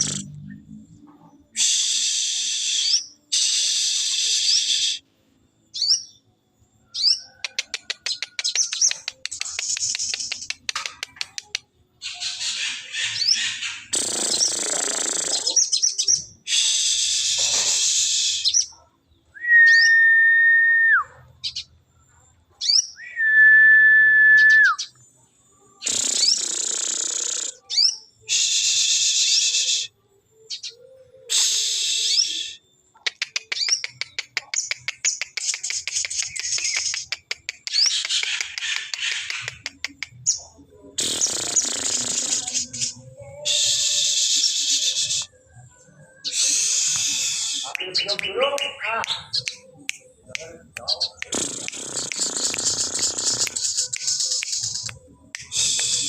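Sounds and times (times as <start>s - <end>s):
bird whistled notes: 1.5s - 5.0s, 19.4s - 21.6s, 25.8s - 32.7s, 41.0s - 45.4s, 46.0s - 49.6s
bird harsh rasping calls: 12.0s - 15.9s, 37.7s - 39.8s, 50.8s - 54.9s
bird ticking chatters: 12.3s - 16.1s, 25.8s - 27.7s, 41.0s - 43.0s, 46.3s - 56.0s.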